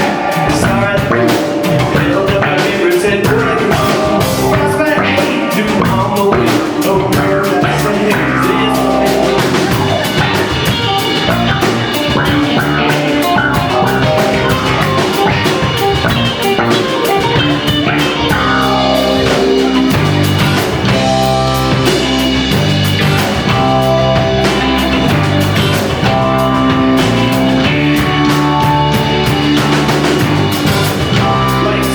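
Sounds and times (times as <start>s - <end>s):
drum kit beat: 0.0s - 31.9s
rock band playing: 0.0s - 31.9s.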